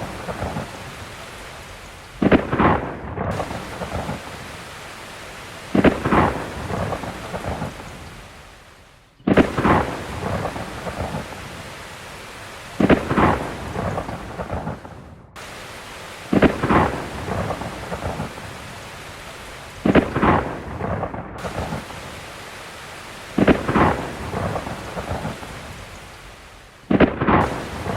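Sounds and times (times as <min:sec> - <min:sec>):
heavy rain falling: 0:00.0 - 0:27.9
thunder-like crashes: 0:02.2 - 0:04.6, 0:05.7 - 0:07.9, 0:09.3 - 0:11.6, 0:23.4 - 0:25.7.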